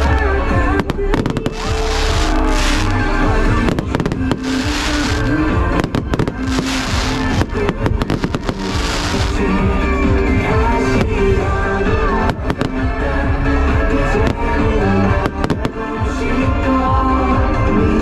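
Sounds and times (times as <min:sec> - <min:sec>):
fireworks cracking: 0:00.0 - 0:16.8
loud music: 0:00.0 - 0:18.0
fireworks rushing hisses: 0:00.8 - 0:13.0, 0:14.0 - 0:15.9.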